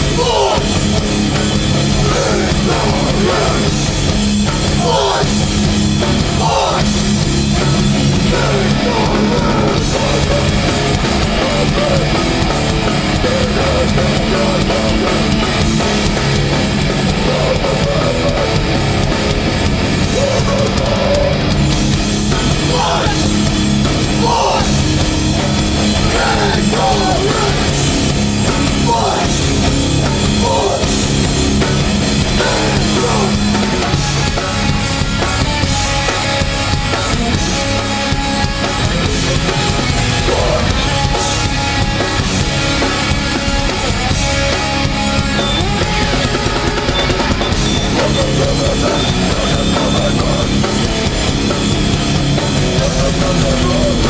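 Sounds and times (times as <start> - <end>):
shouted vocals: 0.0 - 3.8, 4.6 - 5.6, 6.2 - 15.6, 16.6 - 18.9, 19.5 - 21.5, 22.4 - 23.4, 24.0 - 27.8, 28.6 - 29.6, 30.2 - 31.0, 32.2 - 34.0, 38.8 - 41.6, 45.1 - 51.1
hardcore band playing live: 0.0 - 54.0.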